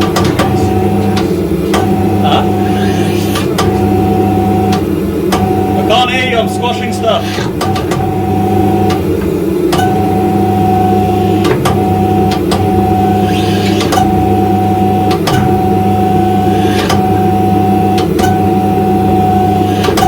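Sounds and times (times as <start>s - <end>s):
hydraulic pump hum and whine: 0.0s - 20.0s.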